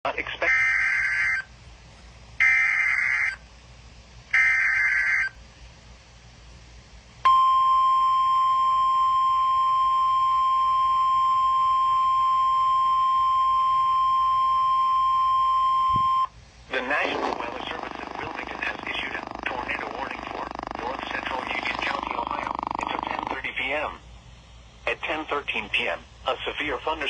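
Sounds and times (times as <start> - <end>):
steady warning alarm tone: 0.5 - 1.5, 2.4 - 3.4, 4.3 - 5.4, 7.3 - 16.3, 17.7 - 23.4
digital data bursts: 16.8 - 23.8.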